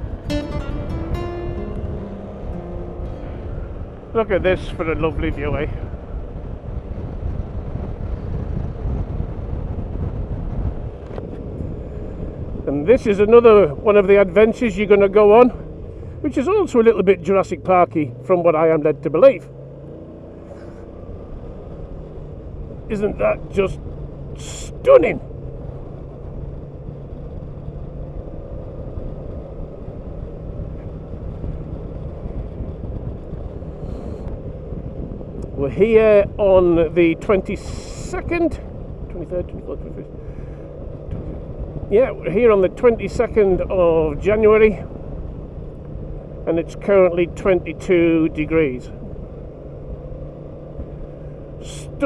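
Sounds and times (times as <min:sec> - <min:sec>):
road noise: 0:00.0 - 0:52.0
scooter engine hum: 0:00.0 - 0:52.0
wind rumble on microphone: 0:00.0 - 0:52.0.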